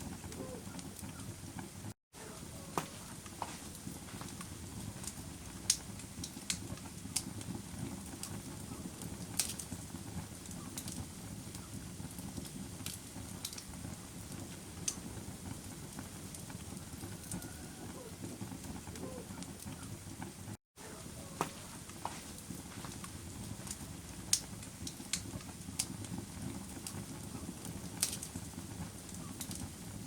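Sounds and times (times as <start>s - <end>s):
campfire flames rushing: 0.0s - 30.0s
burning wood popping and snapping: 2.7s - 20.4s, 21.4s - 29.9s.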